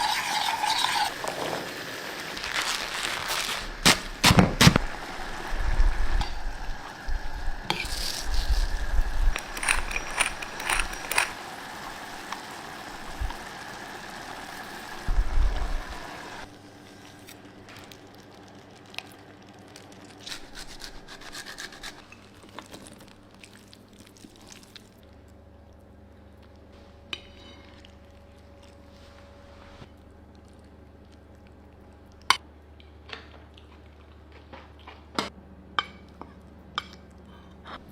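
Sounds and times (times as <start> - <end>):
kitchen utensils clinking: 9.3 - 11.6.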